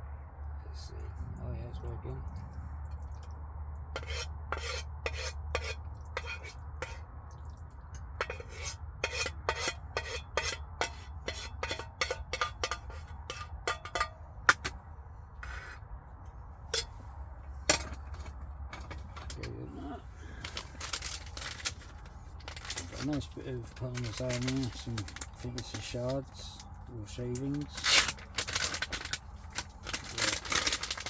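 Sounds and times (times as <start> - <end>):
fork scraping and clinking on pan: 4.0 - 7.0, 8.0 - 14.7, 16.7 - 17.0.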